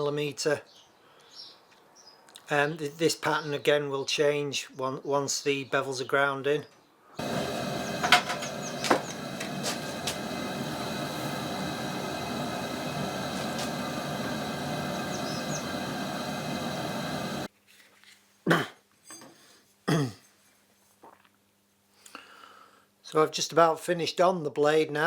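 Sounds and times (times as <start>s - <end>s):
grinder grinding steel: 7.2s - 17.5s.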